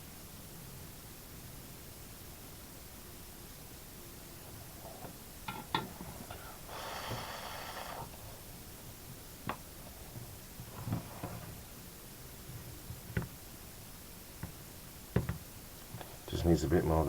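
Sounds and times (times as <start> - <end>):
breathy exhale: 6.2 - 8.4.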